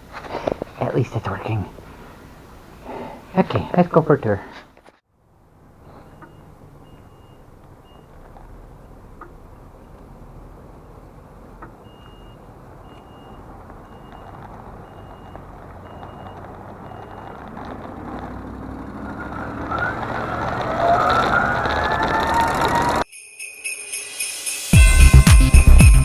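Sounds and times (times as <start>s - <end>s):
reverse warning beeps: 6.0s - 8.1s, 11.8s - 17.4s.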